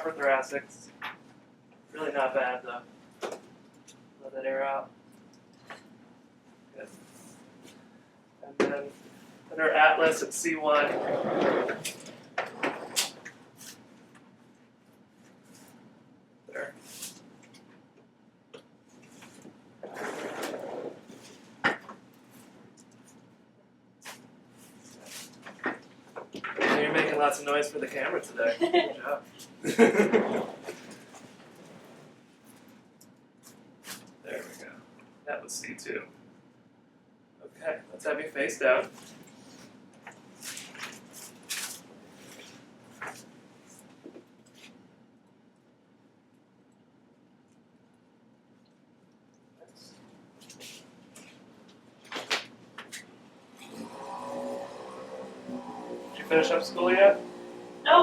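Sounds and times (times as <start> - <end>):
table clicking and creaking: 10.8 - 13.3, 19.8 - 21.1
soft shuffling: 49.8 - 51.5.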